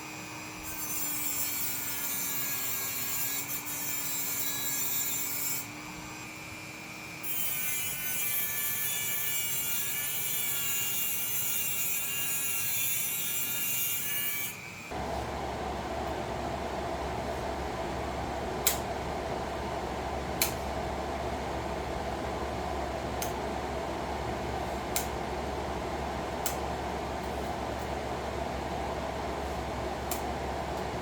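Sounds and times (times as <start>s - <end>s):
electric drill cutting metal: 0.0s - 15.0s
low steady hum: 14.9s - 31.0s.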